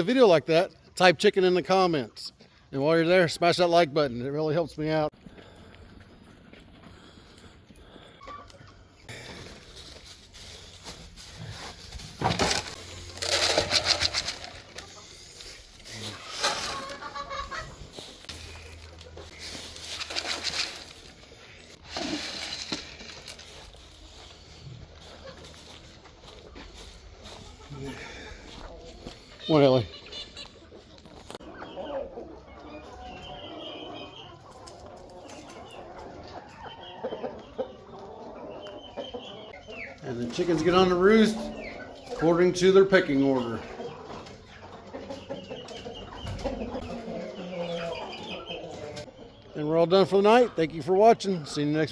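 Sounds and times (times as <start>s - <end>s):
hens clucking: 0.0s - 51.9s
chickens making soft calls: 5.1s - 49.7s
rustling: 9.2s - 27.6s.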